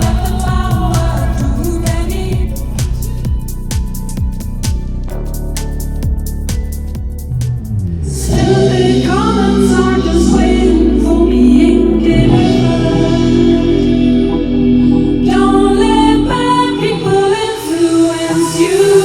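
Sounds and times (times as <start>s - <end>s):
voices singing long notes: 0.0s - 3.3s, 8.1s - 19.0s
deep bass: 0.0s - 18.2s.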